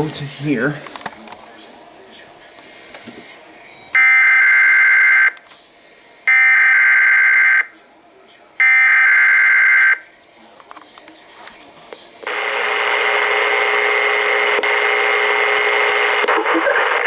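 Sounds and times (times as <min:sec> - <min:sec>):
static-laden radio signal: 0:11.4 - 0:17.0.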